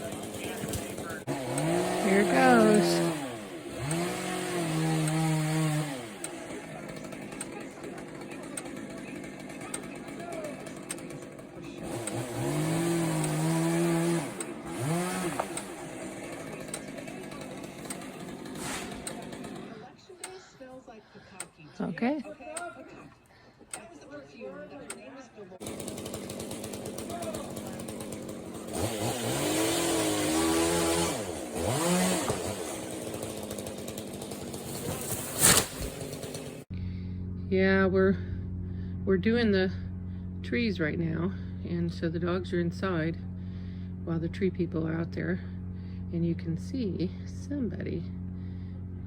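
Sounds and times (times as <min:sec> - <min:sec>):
chainsaw revving: 0:00.0 - 0:20.0, 0:25.6 - 0:36.7.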